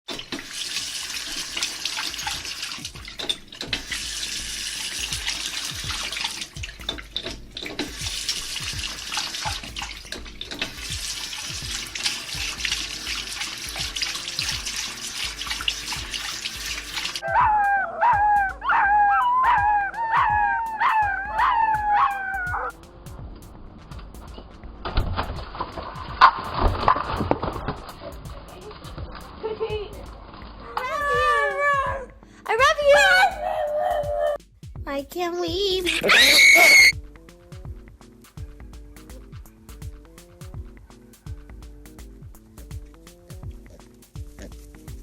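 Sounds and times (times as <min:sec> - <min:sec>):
water hissing: 0:00.1 - 0:17.2, 0:35.9 - 0:36.9
low thumping beat: 0:02.4 - 0:36.0, 0:36.9 - 0:45.0
dog howling: 0:17.2 - 0:22.7, 0:30.7 - 0:32.1, 0:32.9 - 0:34.4, 0:36.0 - 0:36.9.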